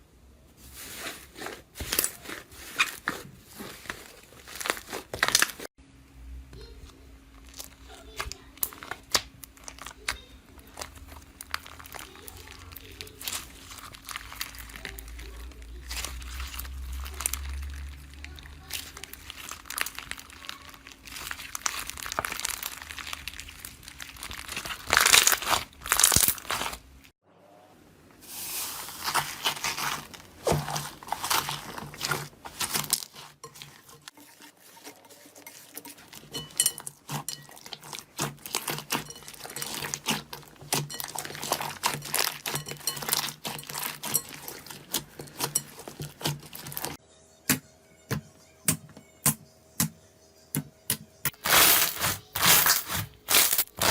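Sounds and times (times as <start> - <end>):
slime squelching: 0.6 - 5.7, 6.6 - 27.1, 28.2 - 47.0, 51.3 - 53.9
slime crackling and popping: 4.4 - 5.7, 7.4 - 27.0, 28.9 - 33.9, 35.9 - 47.0, 51.3 - 53.9.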